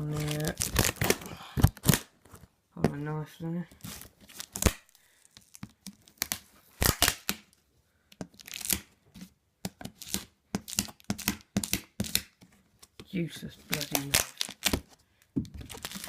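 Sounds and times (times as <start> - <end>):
packaging being torn open: 0.0 - 2.1, 4.3 - 7.5, 13.7 - 14.9, 15.7 - 16.0.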